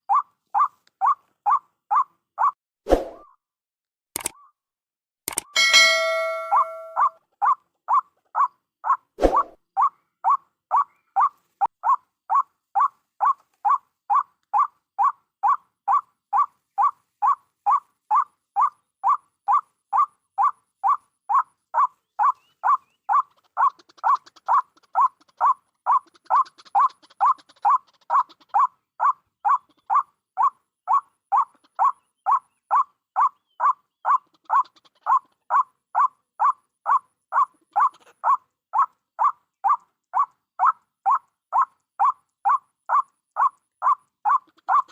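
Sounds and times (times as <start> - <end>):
waterhen calling: 5.6 - 7.2, 20.4 - 30.1, 30.9 - 35.4, 37.4 - 44.9.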